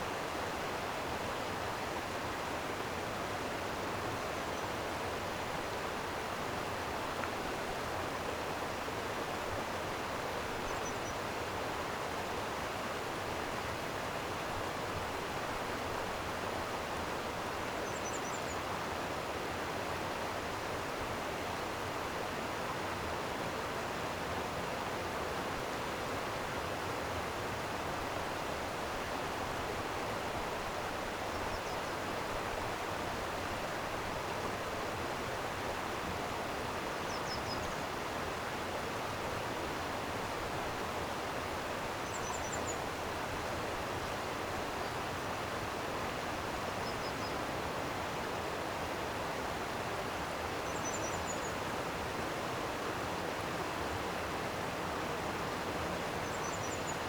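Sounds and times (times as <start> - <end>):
stream water rushing: 0.0 - 57.0
small birds chirping: 17.8 - 18.6, 42.0 - 42.8, 50.7 - 51.6, 56.2 - 57.0.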